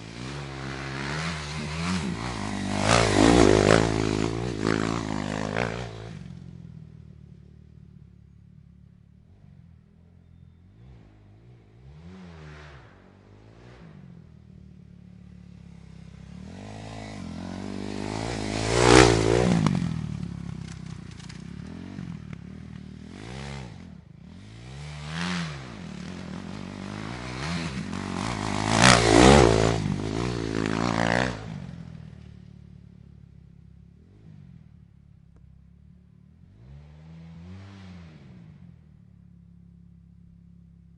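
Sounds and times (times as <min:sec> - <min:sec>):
dirt bike engines revving: 0:00.0 - 0:07.0, 0:09.3 - 0:32.4, 0:36.4 - 0:38.8.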